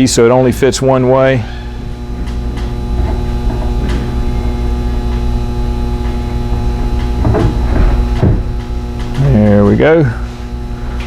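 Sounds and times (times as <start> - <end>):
electrical mains hum: 0.0 - 11.0
low rumble: 0.4 - 9.2.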